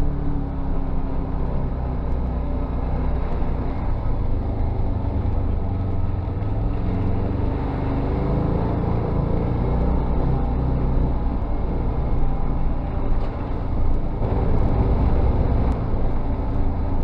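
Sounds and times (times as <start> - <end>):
engine droning: 0.0 - 17.0.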